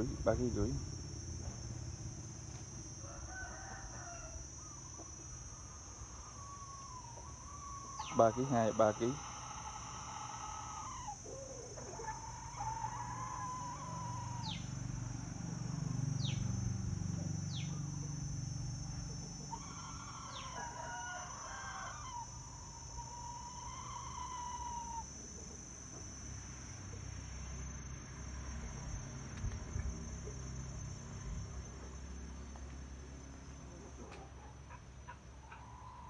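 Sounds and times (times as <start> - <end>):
steady high whine: 0.0 - 3.1
roosters crowing: 2.2 - 29.1, 30.0 - 36.0.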